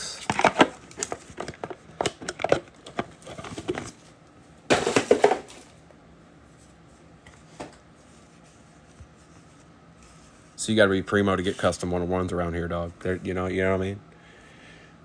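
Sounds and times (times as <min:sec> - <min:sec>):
packaging crinkling: 0:00.2 - 0:04.0
cards rustling and clicking: 0:00.2 - 0:04.1.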